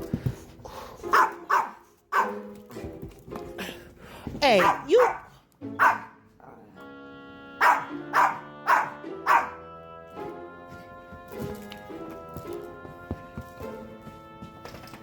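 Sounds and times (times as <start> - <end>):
background music with held notes: 0.0 - 15.0
dog barking: 1.0 - 2.4, 4.6 - 6.2, 7.6 - 9.6.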